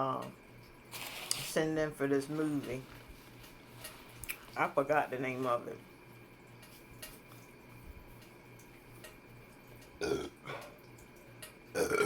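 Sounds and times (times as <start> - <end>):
person burping: 10.0 - 10.7, 11.7 - 12.0.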